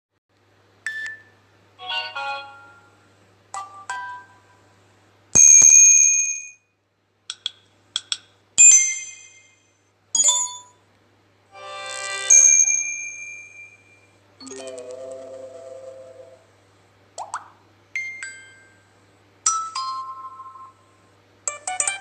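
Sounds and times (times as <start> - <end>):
high ringing tone: 11.6 - 16.4.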